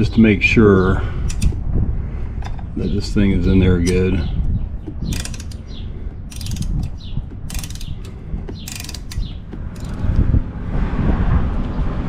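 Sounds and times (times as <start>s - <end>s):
low rumbling handling noise: 0.0s - 12.0s
sharp metallic clicks: 1.2s - 1.6s, 3.4s - 10.6s.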